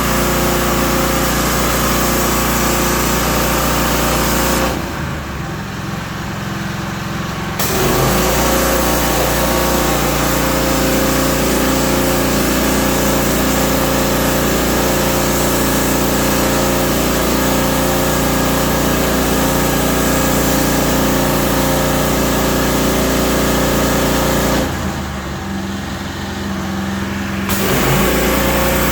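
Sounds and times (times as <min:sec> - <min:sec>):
pressure washer engine running: 0:00.0 - 0:28.9
water spray hiss: 0:07.6 - 0:24.7, 0:26.9 - 0:28.9.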